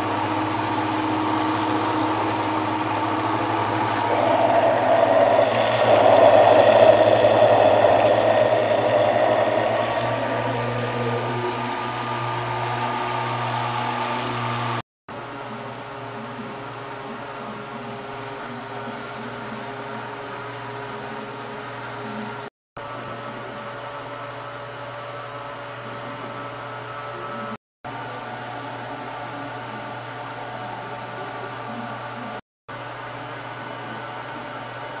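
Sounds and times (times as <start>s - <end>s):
electric blender motor running: 0.0s - 14.8s.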